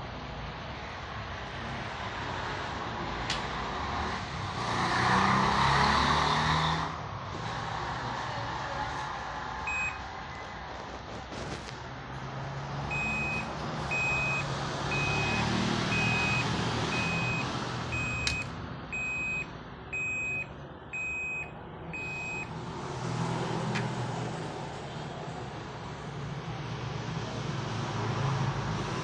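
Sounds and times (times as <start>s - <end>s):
electronic beeper beeping: 12.9s - 18.4s, 19.0s - 22.5s.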